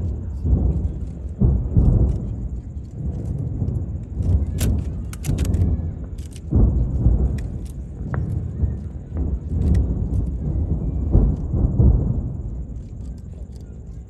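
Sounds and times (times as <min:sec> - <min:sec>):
fireworks booming: 0:00.0 - 0:14.0
fireworks crackling: 0:00.0 - 0:14.0.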